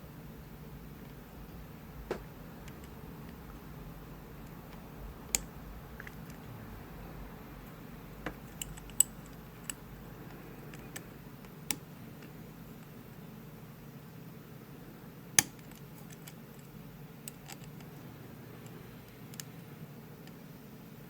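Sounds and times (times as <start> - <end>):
lock pick metallic clicks: 8.4 - 9.8.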